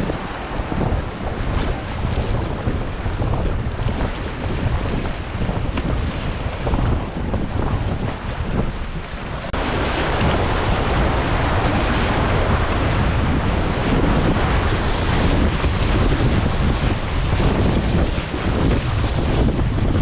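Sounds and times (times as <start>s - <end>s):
wind buffeting microphone: 0.0s - 20.0s
whitewater rushing: 9.1s - 20.0s.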